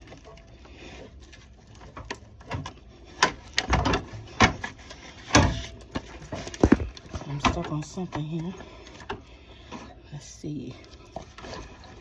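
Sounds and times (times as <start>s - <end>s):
clicks and knocks of hand work: 1.7s - 9.2s.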